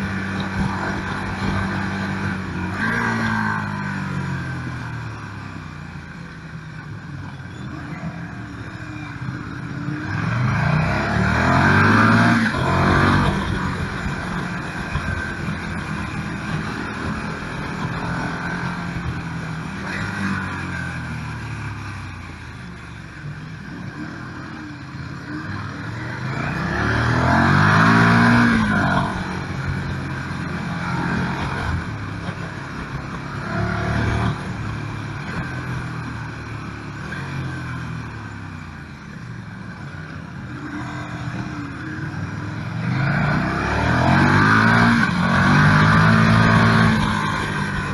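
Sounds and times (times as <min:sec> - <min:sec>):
motorcycle engine revving: 0:00.0 - 0:05.4, 0:07.5 - 0:22.2, 0:23.7 - 0:38.4, 0:40.1 - 0:47.9.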